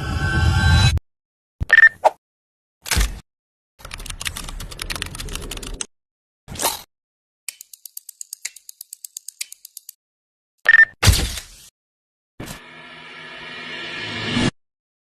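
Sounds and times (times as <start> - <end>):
mechanical clicking: 7.5 - 10.0.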